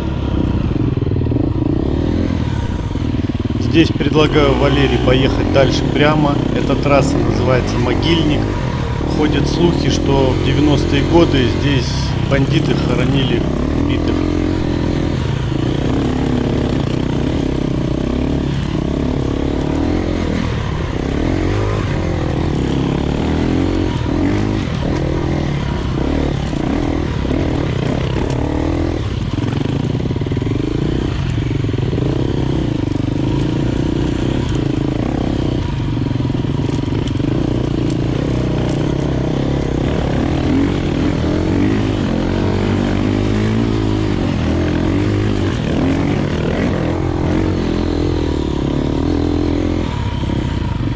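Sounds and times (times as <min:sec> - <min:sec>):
dirt bike engine revving: 0:02.6 - 0:14.8.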